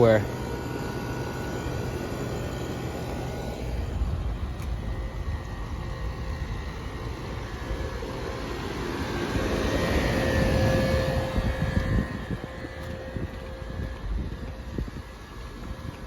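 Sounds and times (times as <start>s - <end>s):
faint steady hum: 0.0s - 16.0s
vehicle engine and road noise: 0.0s - 16.0s.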